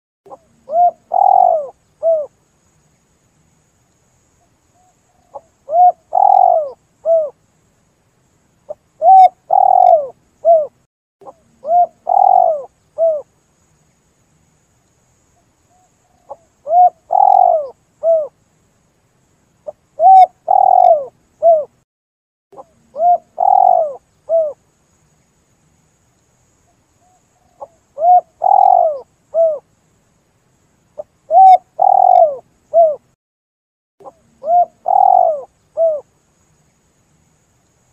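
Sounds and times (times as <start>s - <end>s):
dove cooing: 0.3s - 2.3s, 5.2s - 7.4s, 8.7s - 13.3s, 15.7s - 18.3s, 20.0s - 21.8s, 22.6s - 24.6s, 27.0s - 29.6s, 31.3s - 33.1s, 34.0s - 36.1s.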